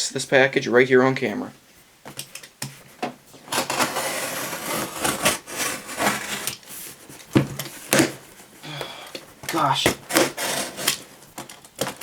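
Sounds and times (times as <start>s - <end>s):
box cutter slicing cardboard: 3.4s - 6.6s, 9.8s - 11.1s.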